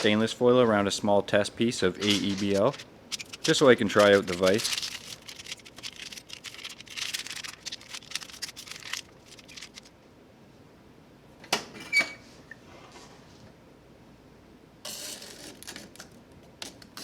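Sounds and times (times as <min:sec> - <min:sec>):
metal foil crinkling: 0:01.9 - 0:10.0.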